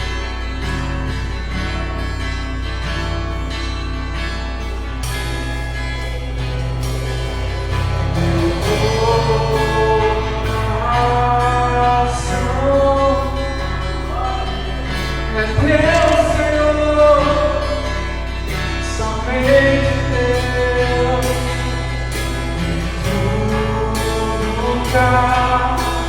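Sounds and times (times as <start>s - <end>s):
acoustic guitar: 0.0s - 26.0s
man singing slow melody: 7.7s - 26.0s.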